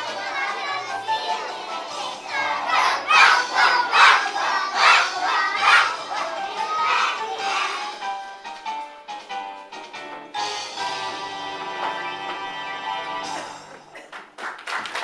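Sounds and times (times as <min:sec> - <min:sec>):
music: 0:00.0 - 0:15.0
children shouting together: 0:02.2 - 0:07.7.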